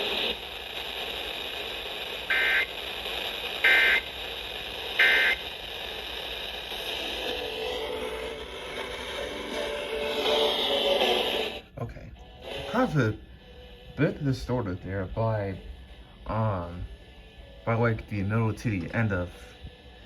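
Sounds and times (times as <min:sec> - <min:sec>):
radio reception hiss: 0:00.0 - 0:20.0
buzzy digital data tones: 0:02.3 - 0:02.8, 0:03.6 - 0:04.2, 0:04.9 - 0:05.5.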